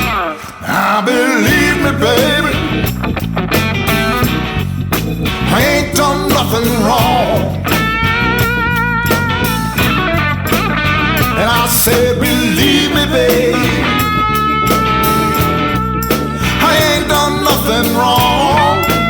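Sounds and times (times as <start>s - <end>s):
blues-rock lead guitar: 0.0s - 19.0s
bass and drum beat: 1.5s - 19.0s.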